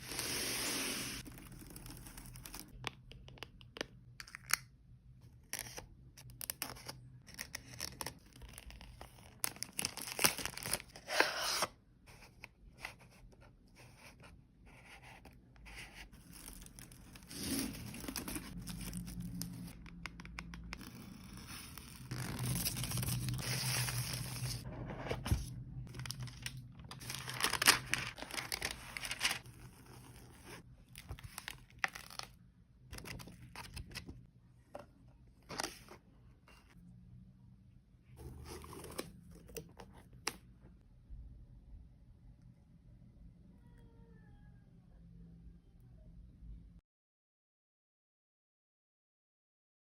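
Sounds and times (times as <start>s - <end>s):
packaging tearing and crinkling: 9.3s - 11.1s, 20.7s - 24.6s, 25.9s - 32.3s.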